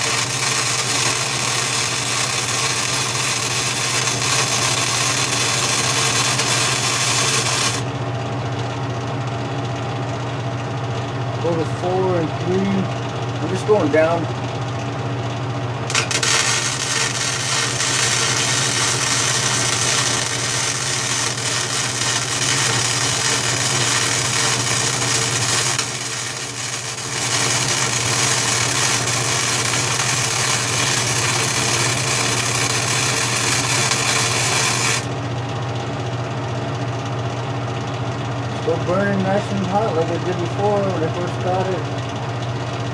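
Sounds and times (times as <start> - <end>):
welding arc crackling: 0.0 - 7.9, 15.9 - 35.1
welder humming: 0.0 - 8.0, 11.4 - 14.4, 15.8 - 35.2, 38.6 - 42.0.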